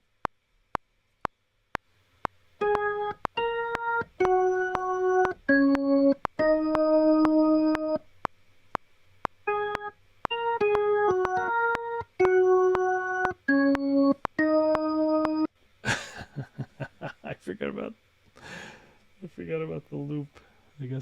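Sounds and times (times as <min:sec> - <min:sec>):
metronome clicking: 0:02.2 - 0:15.5
electric piano notes: 0:02.6 - 0:08.0, 0:09.5 - 0:15.5.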